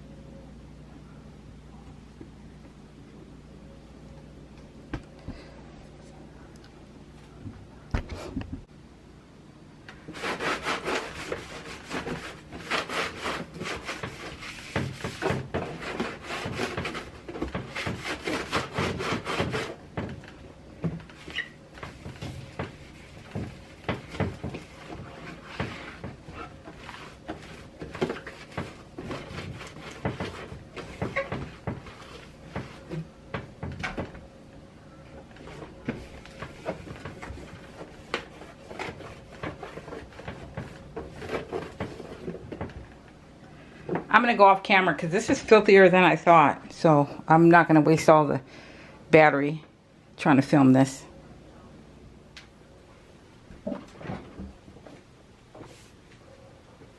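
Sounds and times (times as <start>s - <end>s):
scrubbing fridge surfaces: 10.0s - 34.2s, 35.3s - 42.9s.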